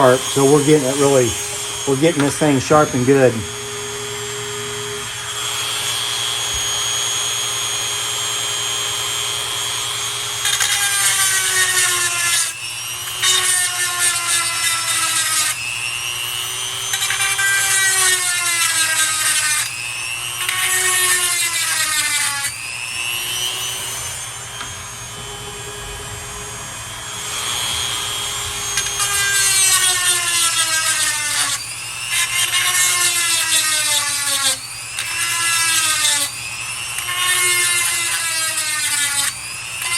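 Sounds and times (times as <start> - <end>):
grinding wheel grinding chain teeth: 10.4 - 15.9.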